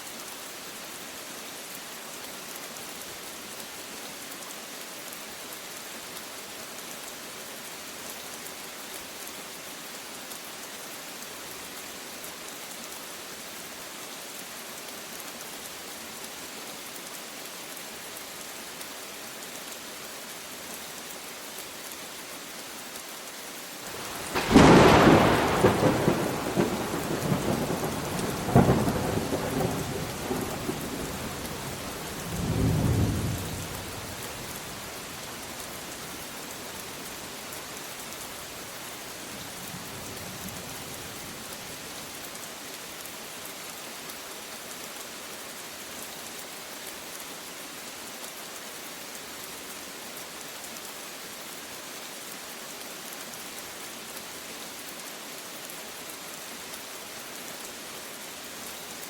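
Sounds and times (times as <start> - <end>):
steady rain falling: 0.0 - 59.0
thunder rumbling: 23.9 - 34.2.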